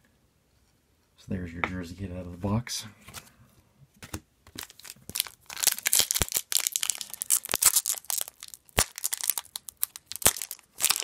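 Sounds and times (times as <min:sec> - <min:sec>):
wrapper tearing and crinkling: 0:04.6 - 0:11.0.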